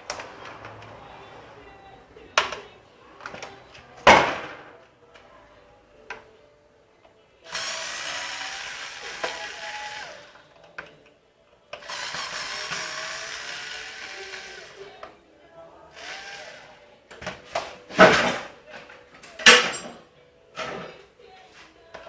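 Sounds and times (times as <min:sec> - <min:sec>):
sharp knocks of parts: 0:19.3 - 0:20.0.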